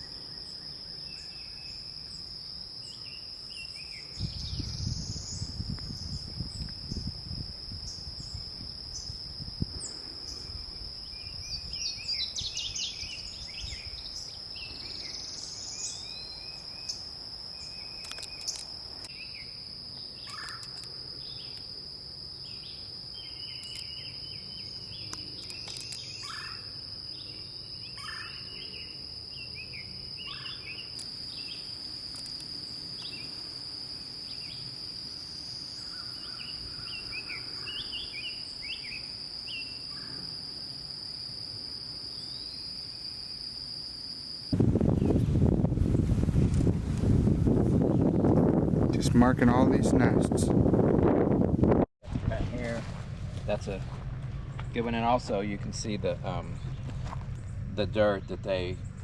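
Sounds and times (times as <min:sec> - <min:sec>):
insects droning: 0:00.0 - 0:59.0
low rumble: 0:52.0 - 0:59.0.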